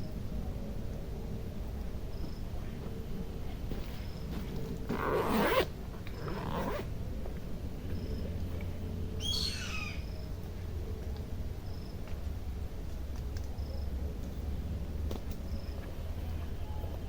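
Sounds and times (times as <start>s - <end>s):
faint high chirp: 9.2s - 10.3s.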